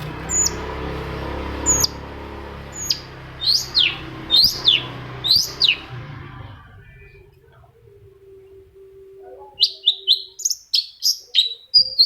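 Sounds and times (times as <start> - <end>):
shrike calling: 2.7 - 12.0.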